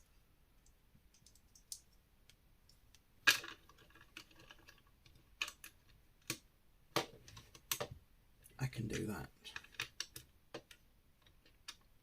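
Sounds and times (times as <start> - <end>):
plastic bricks clicking together: 0.6 - 8.0, 9.5 - 12.0.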